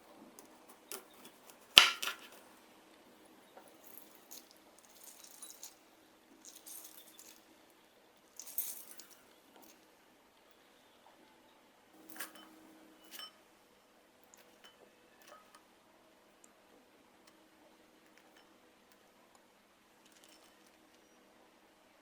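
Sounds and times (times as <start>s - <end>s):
rustling and scraping: 0.3s - 2.6s, 3.5s - 5.8s, 6.4s - 7.4s
object set down hard: 0.9s - 2.4s.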